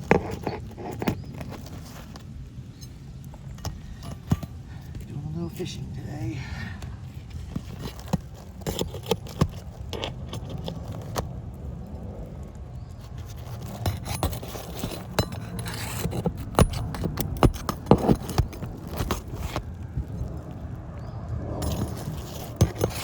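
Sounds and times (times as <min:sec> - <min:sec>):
hand tools scraping shingles: 0:07.2 - 0:11.3, 0:13.1 - 0:20.3, 0:21.6 - 0:23.0
steady low rumble: 0:10.0 - 0:23.0.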